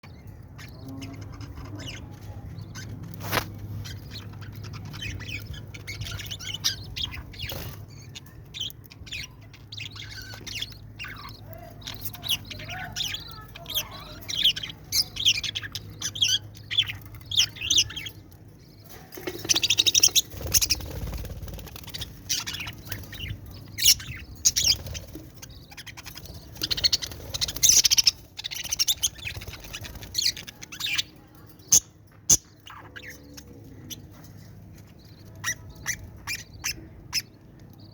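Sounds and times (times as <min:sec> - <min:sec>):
birds chirping and squawking: 0:00.0 - 0:37.9.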